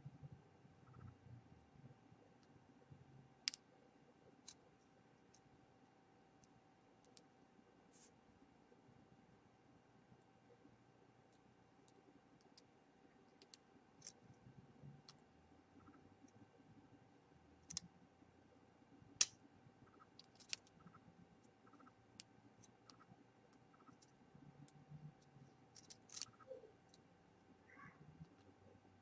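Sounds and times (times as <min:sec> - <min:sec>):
metal tweezers clicking on parts: 0:25.7 - 0:27.0.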